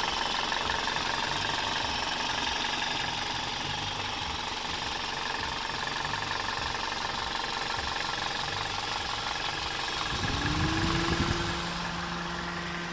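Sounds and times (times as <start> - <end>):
car engine idling: 0.0 - 12.9
rising tone: 10.1 - 12.9.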